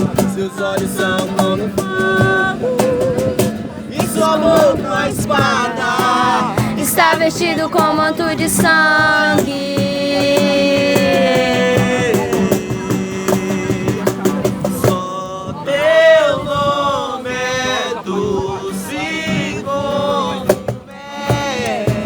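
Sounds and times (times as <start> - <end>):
steady percussive beat: 0.0 - 15.1, 20.4 - 22.0
voices singing worship song: 0.0 - 22.0.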